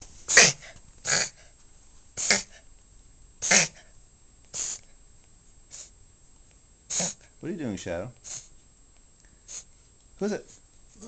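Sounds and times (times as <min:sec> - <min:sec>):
dog reverse sneezing: 0:00.3 - 0:01.4, 0:02.2 - 0:02.6, 0:03.4 - 0:03.9, 0:04.5 - 0:04.9, 0:06.9 - 0:07.2, 0:08.2 - 0:08.5, 0:09.5 - 0:09.7.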